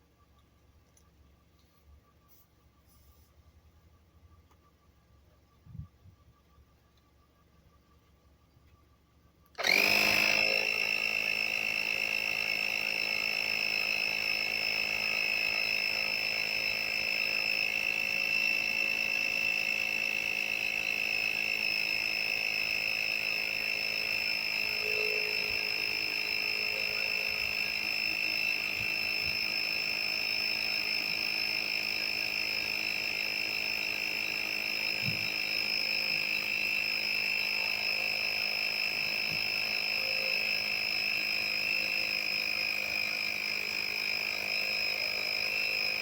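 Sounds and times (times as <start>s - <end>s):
high steady whine: 0.0s - 46.0s
tyre inflator motor droning: 9.6s - 46.0s.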